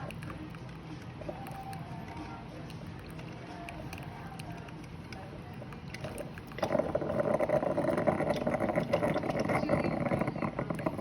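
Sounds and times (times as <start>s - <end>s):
coffee maker gurgling sputter: 5.6s - 11.0s
coffee maker hissing: 6.6s - 11.0s.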